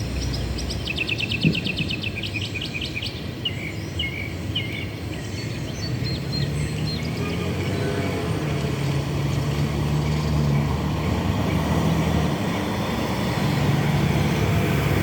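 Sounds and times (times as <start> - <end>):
diesel locomotive engine drone: 5.0 - 15.0.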